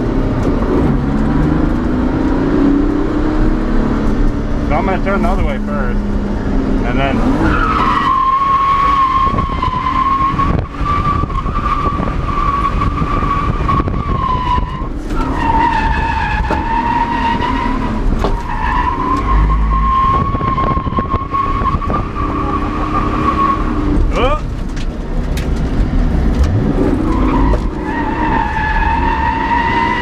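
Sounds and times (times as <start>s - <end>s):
car engine running: 0.0s - 14.1s
tires squealing: 6.8s - 24.6s, 26.5s - 30.0s.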